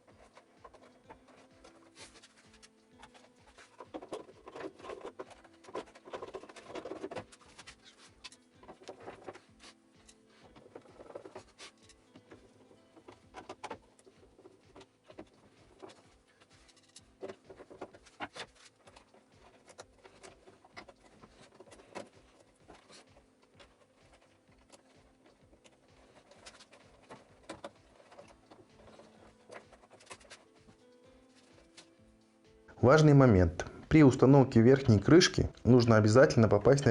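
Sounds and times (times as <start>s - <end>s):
plastic parts clicking: 0.0s - 30.6s.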